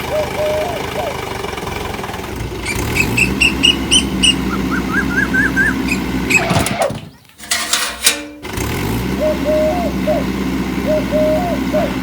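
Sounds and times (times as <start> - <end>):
small engine running: 0.0 - 7.1, 8.4 - 12.0
short chirps: 2.6 - 5.8.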